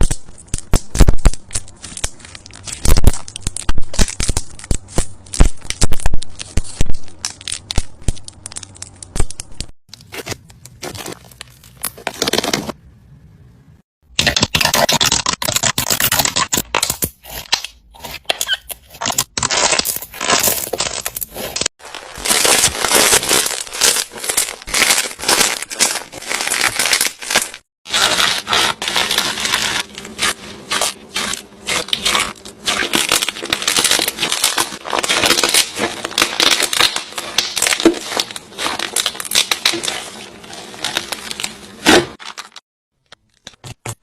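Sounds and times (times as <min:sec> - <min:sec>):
slime crackling and popping: 0:00.0 - 0:09.7, 0:19.1 - 0:42.6.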